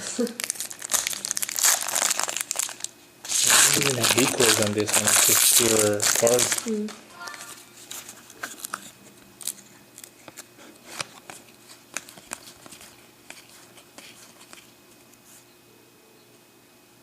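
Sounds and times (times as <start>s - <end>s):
trading cards flipped by hand: 10.0s - 14.7s.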